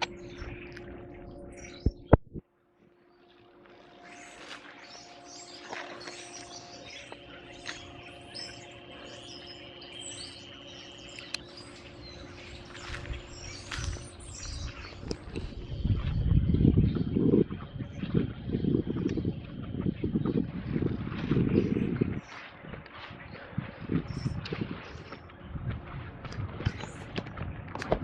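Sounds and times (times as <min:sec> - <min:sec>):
flock of birds chirping: 0:00.0 - 0:02.2, 0:03.0 - 0:28.0
low rumble: 0:06.3 - 0:28.0.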